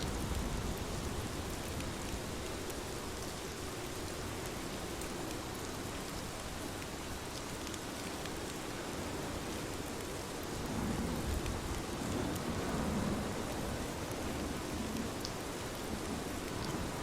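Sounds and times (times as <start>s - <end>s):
rain pattering: 0.0s - 17.0s.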